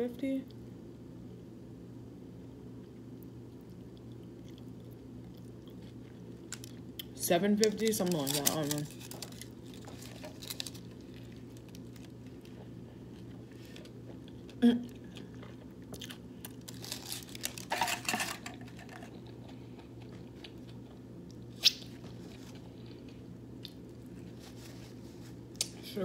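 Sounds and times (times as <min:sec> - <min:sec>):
faint steady hum: 0:00.0 - 0:26.0
person chewing food: 0:02.8 - 0:07.2, 0:09.0 - 0:17.7, 0:18.6 - 0:24.4.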